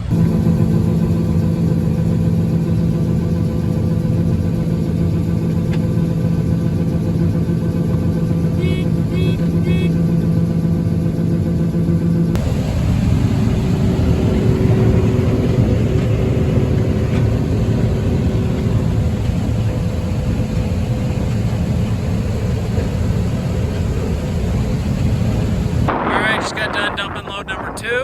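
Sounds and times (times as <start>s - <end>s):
diesel engine running: 0.0s - 28.0s
wind buffeting microphone: 12.4s - 28.0s.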